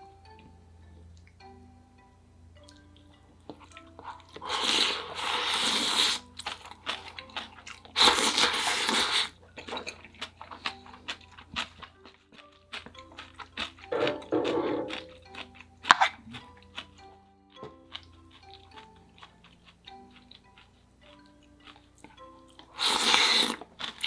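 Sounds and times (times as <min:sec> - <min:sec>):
soft chiming background music: 0:00.0 - 0:05.2, 0:06.2 - 0:08.0, 0:09.4 - 0:22.8
wet chewing clicks: 0:02.6 - 0:13.9, 0:14.9 - 0:24.0
loud noodle slurping: 0:04.0 - 0:10.8, 0:22.7 - 0:24.0.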